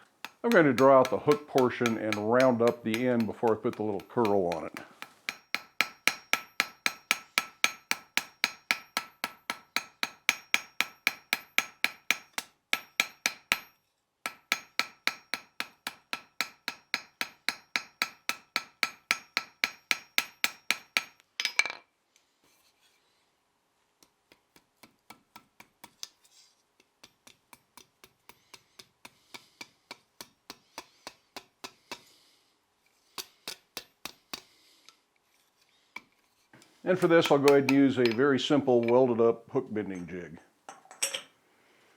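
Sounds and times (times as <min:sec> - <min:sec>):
hammer blows on hot steel: 0:00.2 - 0:13.7.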